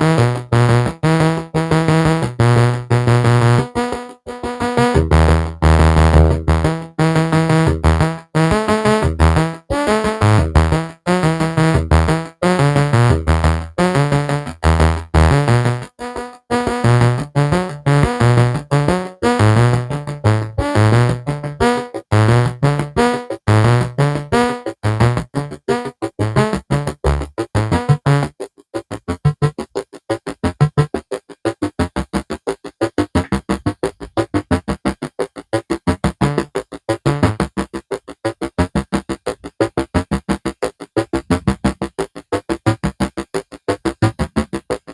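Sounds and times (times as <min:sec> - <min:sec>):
synth bass line: 0:00.0 - 0:28.3, 0:29.0 - 0:29.6, 0:30.5 - 0:31.0, 0:35.7 - 0:37.6, 0:42.5 - 0:44.6
staccato synthesizer notes: 0:00.0 - 0:44.9.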